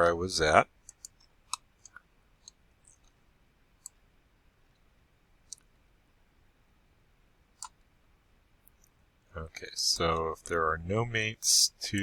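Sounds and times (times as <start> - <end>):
computer mouse clicking: 0.8 - 3.2, 3.8 - 4.0, 5.5 - 5.7, 7.6 - 7.8.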